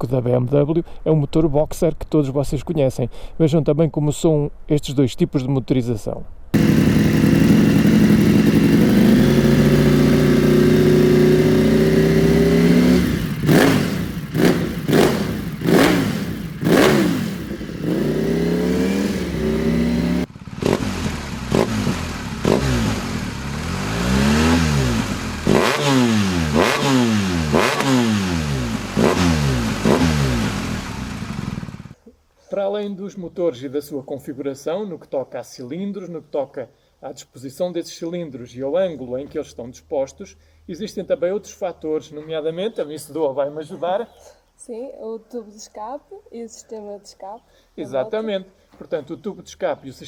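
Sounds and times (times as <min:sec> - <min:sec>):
motorcycle engine revving: 0:06.6 - 0:32.0.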